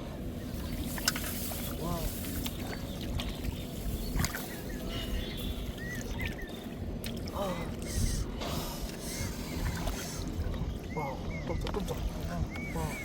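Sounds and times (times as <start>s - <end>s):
water sloshing and splashing: 0.0s - 13.0s.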